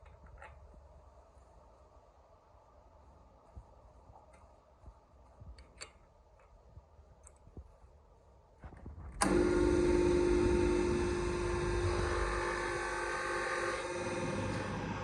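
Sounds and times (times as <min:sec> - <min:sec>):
electric power tool running: 0:09.2 - 0:15.0.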